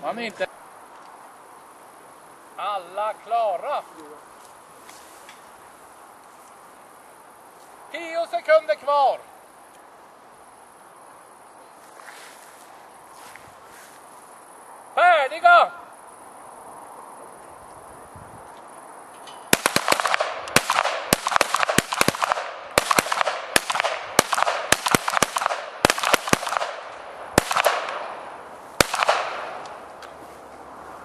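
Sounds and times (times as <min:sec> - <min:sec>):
pistol shots with echo: 0:19.5 - 0:28.2, 0:28.8 - 0:29.6.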